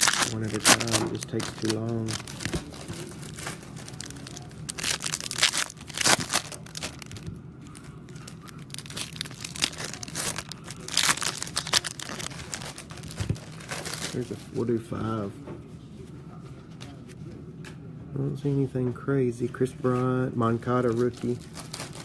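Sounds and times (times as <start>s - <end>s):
foil wrappers tearing and crinkling: 0.0s - 14.4s, 20.9s - 22.0s
faint low hum: 0.0s - 22.0s.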